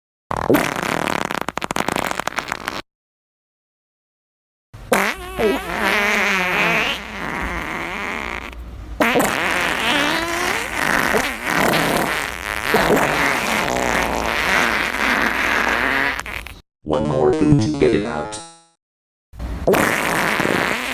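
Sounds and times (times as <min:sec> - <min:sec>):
wobbling fart sound effects: 0:00.3 - 0:02.9, 0:04.9 - 0:16.6, 0:19.6 - 0:20.9.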